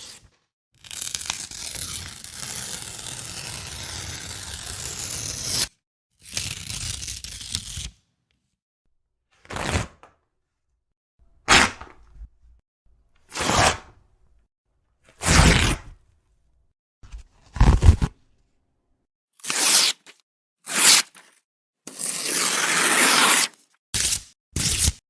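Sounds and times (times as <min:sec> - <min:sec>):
paper tearing: 0:00.0 - 0:07.9, 0:09.4 - 0:10.1, 0:13.3 - 0:13.9, 0:15.2 - 0:16.0, 0:17.4 - 0:18.2, 0:19.4 - 0:25.0.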